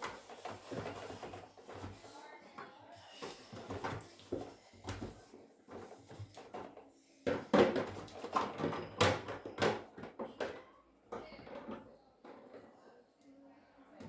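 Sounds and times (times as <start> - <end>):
containers knocking and clattering: 3.5 - 12.6.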